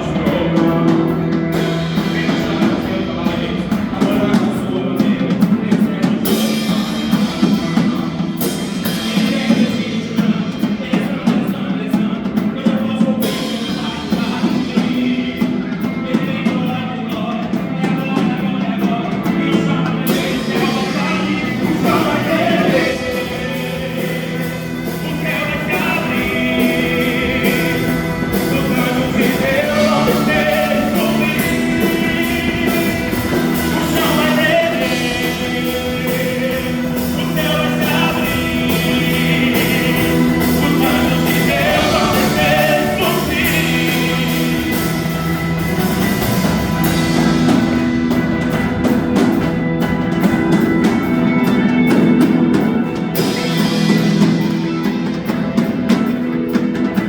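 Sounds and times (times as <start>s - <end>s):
person singing worship song: 8.5s - 45.5s.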